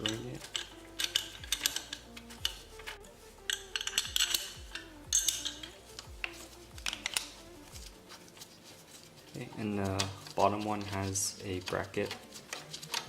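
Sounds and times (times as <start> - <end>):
metal tools clinking on bolts: 0.0 - 7.3
background music with steady beat: 0.0 - 13.0.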